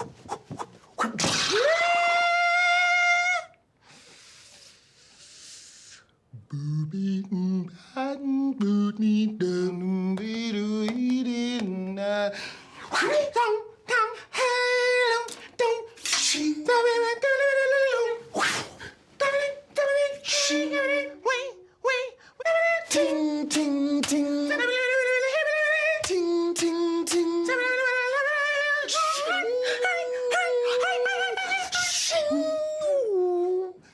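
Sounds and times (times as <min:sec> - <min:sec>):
man beatboxing: 0:00.0 - 0:01.6, 0:26.0 - 0:27.5.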